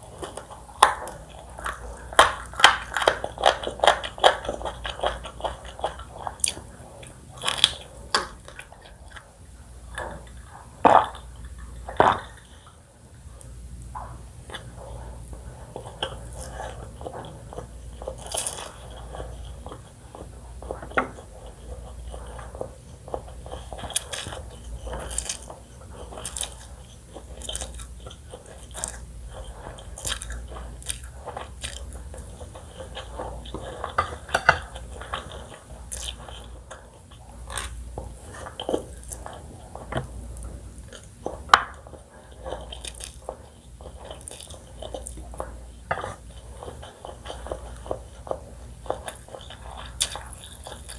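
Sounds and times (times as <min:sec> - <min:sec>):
chewing crispy chicken crunches: 0:14.5 - 0:19.8, 0:23.0 - 0:32.6, 0:34.8 - 0:50.9.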